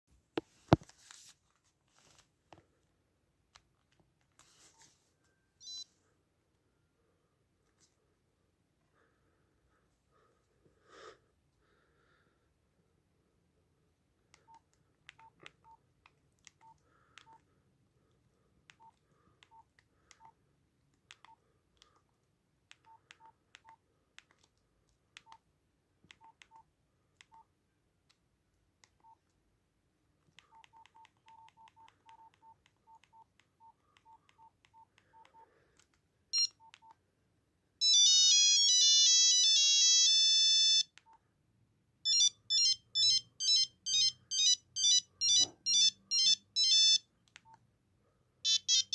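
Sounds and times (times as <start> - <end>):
keypad clicks with beeps: 30.4 - 35.4, 36.4 - 37.0, 42.1 - 47.6
phone ringtone melody: 37.8 - 40.9, 42.1 - 47.0, 48.5 - 48.9.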